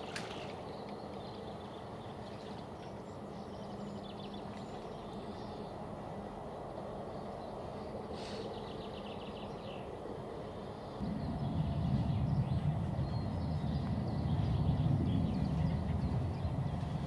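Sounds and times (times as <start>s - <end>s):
loud low rumble: 11.0s - 17.0s.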